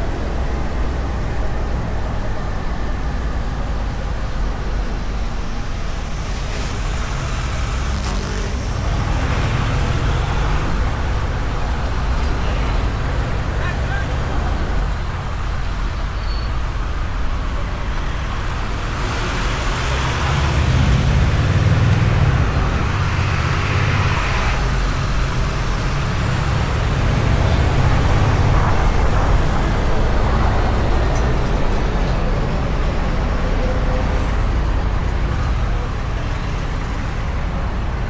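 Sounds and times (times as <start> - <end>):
wind and road noise: 0.0 - 38.0.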